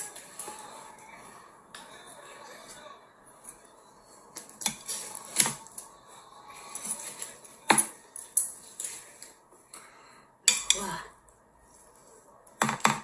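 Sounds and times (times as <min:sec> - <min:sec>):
cutlery and dishes clinking: 0:04.3 - 0:05.9, 0:06.6 - 0:09.4, 0:10.5 - 0:10.9.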